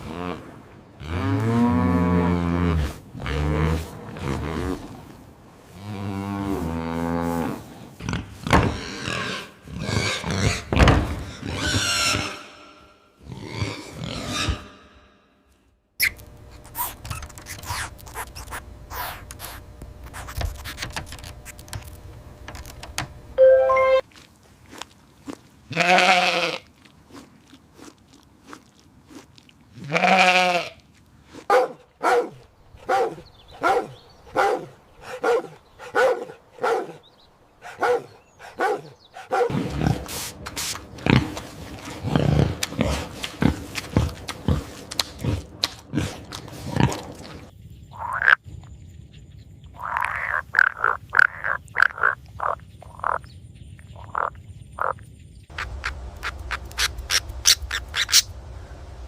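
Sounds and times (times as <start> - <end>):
repeated animal calls: 47.9 - 48.4, 49.8 - 53.3, 53.9 - 58.3.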